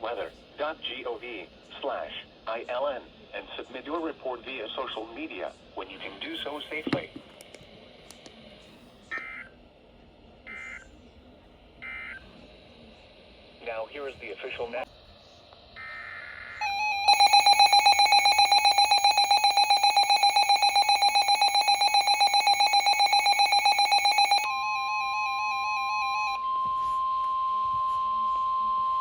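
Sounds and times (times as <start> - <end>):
rapid alarm beeps: 11.8 - 12.3, 16.6 - 29.0
steady warning tone: 15.7 - 29.0
data burst: 15.8 - 29.0.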